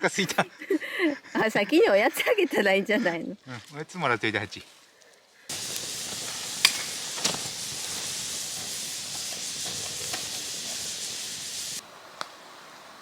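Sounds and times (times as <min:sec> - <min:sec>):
food sizzling on camp stove: 0:05.5 - 0:12.8.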